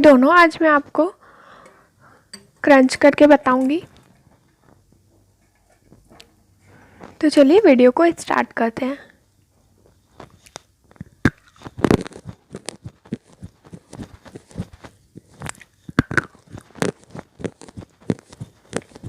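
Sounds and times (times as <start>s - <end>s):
dry chewing crunches: 9.8s - 19.0s.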